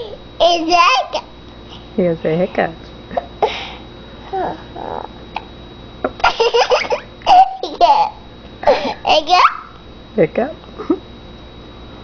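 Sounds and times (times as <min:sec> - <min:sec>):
girl giggling: 0:06.2 - 0:09.1.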